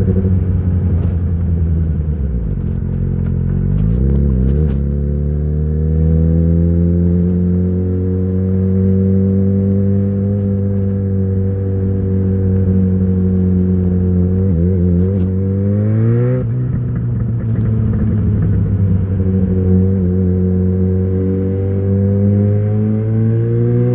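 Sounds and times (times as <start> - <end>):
motorcycle engine under way: 0.0 - 23.9.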